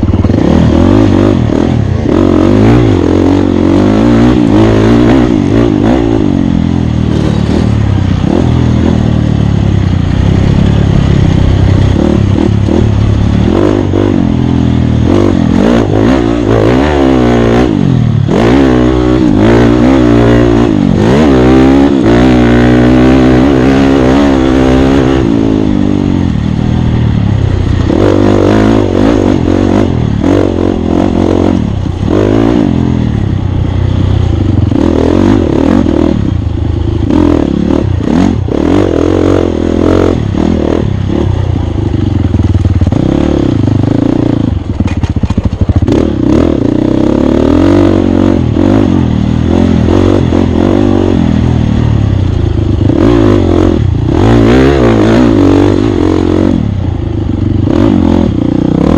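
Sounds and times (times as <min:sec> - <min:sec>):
dirt bike engine revving: 0:00.0 - 0:58.9.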